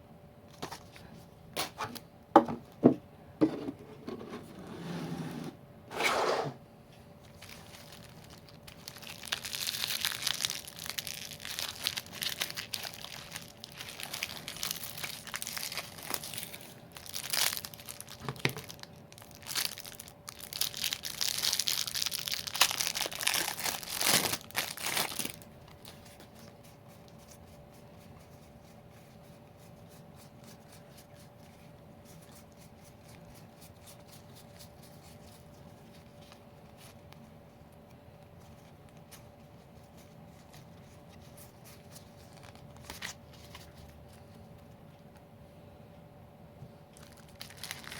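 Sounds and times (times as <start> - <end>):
plastic packaging crinkling: 7.2 - 27.5, 38.4 - 44.3, 46.9 - 47.9.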